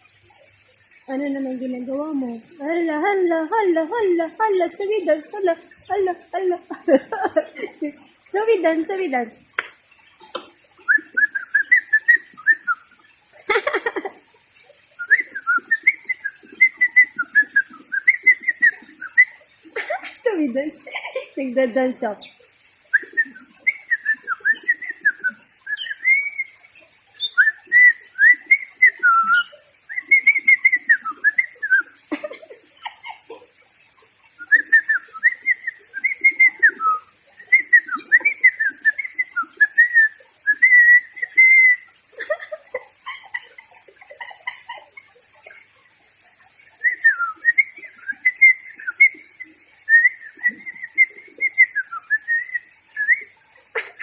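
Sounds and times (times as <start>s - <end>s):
parrot whistling a tune: 10.9s - 13.0s, 15.0s - 19.4s, 22.2s - 33.3s, 34.4s - 42.4s, 46.8s - 53.4s.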